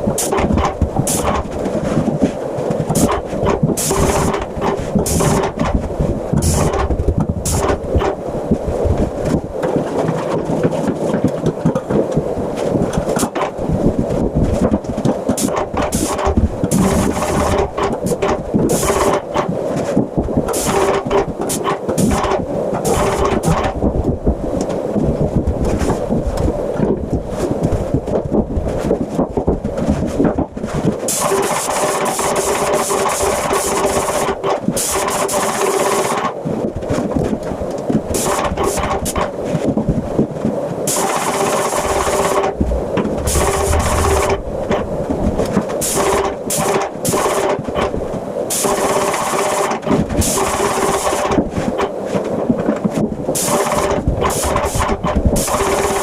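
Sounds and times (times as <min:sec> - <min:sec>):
paint sprayer pump clatter: 0:00.0 - 0:02.2, 0:02.8 - 0:05.8, 0:06.4 - 0:08.2, 0:14.8 - 0:19.5, 0:20.5 - 0:23.8, 0:31.1 - 0:36.4, 0:38.1 - 0:39.3, 0:40.9 - 0:44.9, 0:45.5 - 0:51.9, 0:53.4 - 0:56.0.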